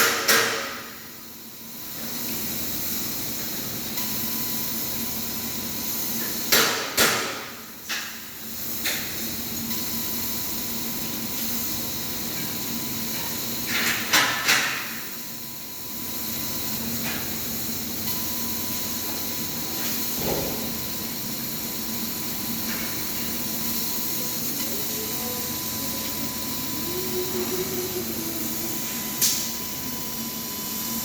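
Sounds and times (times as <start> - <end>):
laser cutting machine hissing: 0.0 - 31.0.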